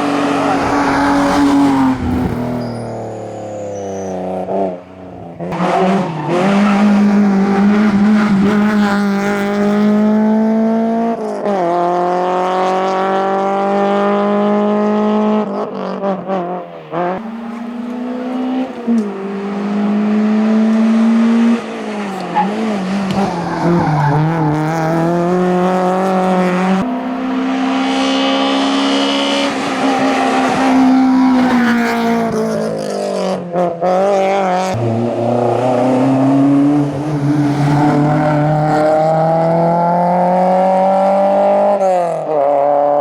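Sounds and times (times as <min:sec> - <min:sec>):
racing car engine revving: 0:04.2 - 0:43.0.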